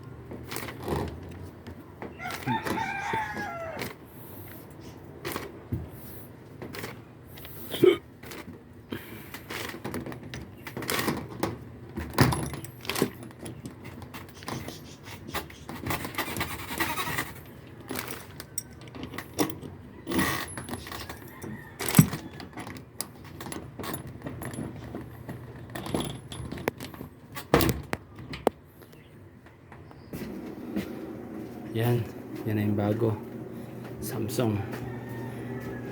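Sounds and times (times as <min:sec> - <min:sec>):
objects clinking and rattling: 0:15.8 - 0:28.4.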